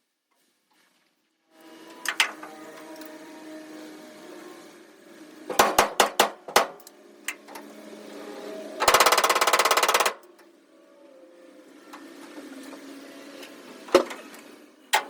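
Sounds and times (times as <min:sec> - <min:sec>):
hammer striking sheet steel: 0:05.5 - 0:06.8.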